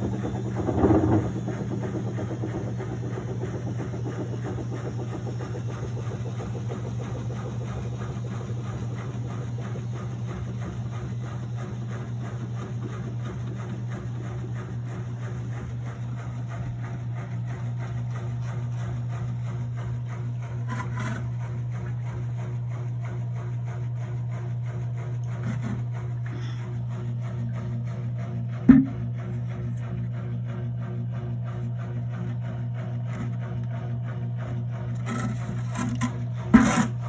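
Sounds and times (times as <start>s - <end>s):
rapid ticking rattle: 0.0s - 14.6s
washing machine humming: 0.0s - 37.0s.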